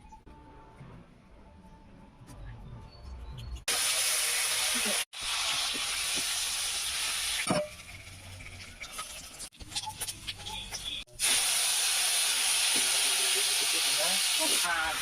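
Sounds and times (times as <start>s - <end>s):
food sizzling in hot oil: 3.7s - 15.0s.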